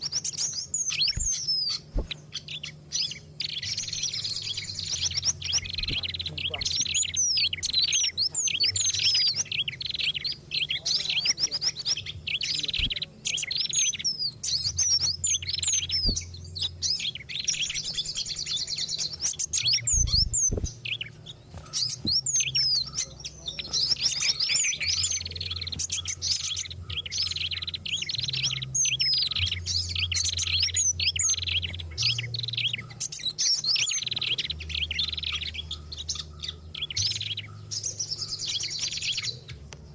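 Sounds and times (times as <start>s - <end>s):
songbirds chirping and whistling: 0.0s - 39.9s.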